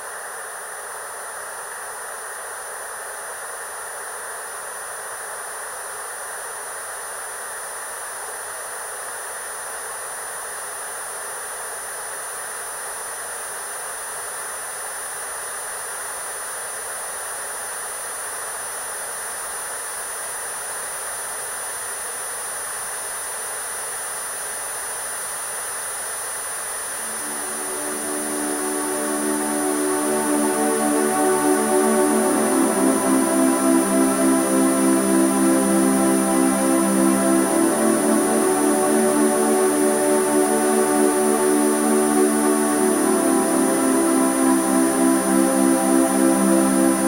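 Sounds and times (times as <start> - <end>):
filtered white noise hiss: 0.0 - 47.0
faint steady high tones: 26.8 - 47.0
musical tones: 27.0 - 47.0.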